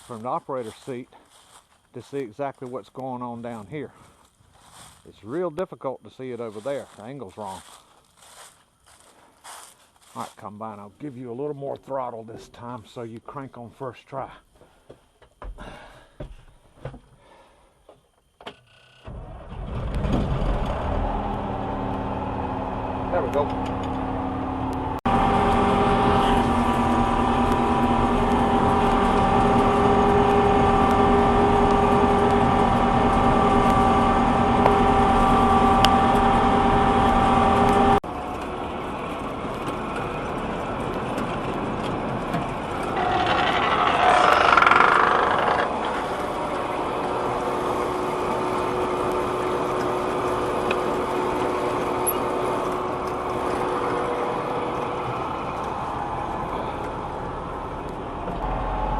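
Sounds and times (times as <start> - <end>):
diesel engine running: 19.1 - 58.9.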